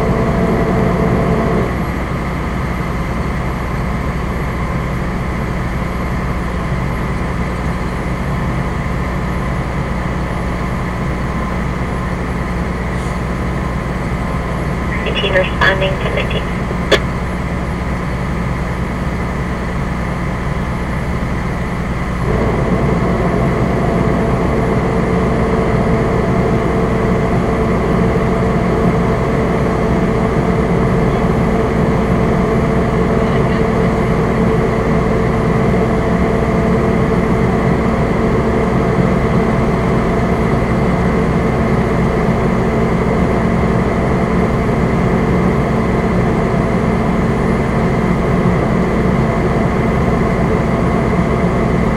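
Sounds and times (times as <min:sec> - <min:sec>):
truck engine drone in cab: 0:00.0 - 0:17.0, 0:17.6 - 0:51.9
steady whine: 0:14.7 - 0:17.0.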